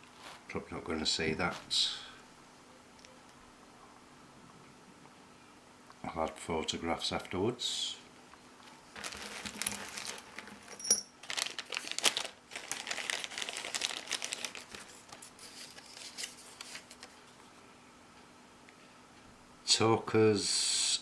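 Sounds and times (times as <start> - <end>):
packaging crinkling: 8.6 - 17.2.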